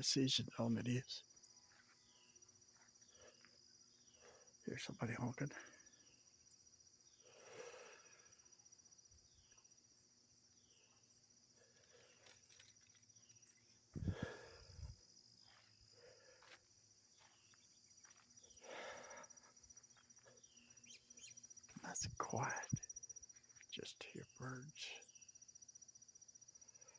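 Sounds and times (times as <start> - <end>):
insect trill: 0.0 - 26.9
bird chirps: 19.3 - 25.4.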